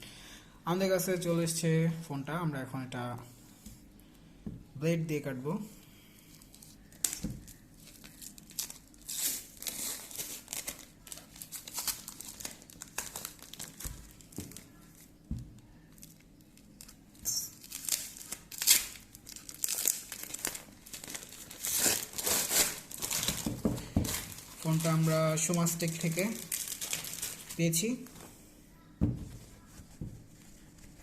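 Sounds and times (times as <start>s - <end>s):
plastic wrapping rustling: 6.4s - 28.4s, 29.1s - 31.0s.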